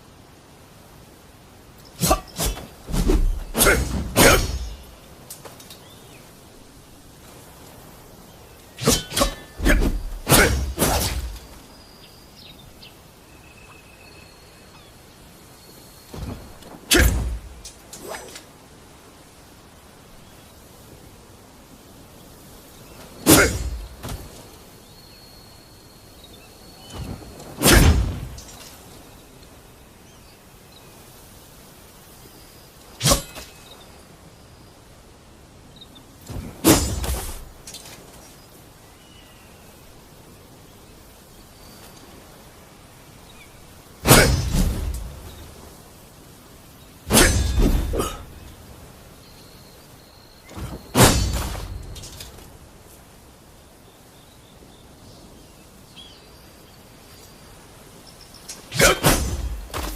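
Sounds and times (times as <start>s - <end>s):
saber strikes: 47.1s - 48.2s.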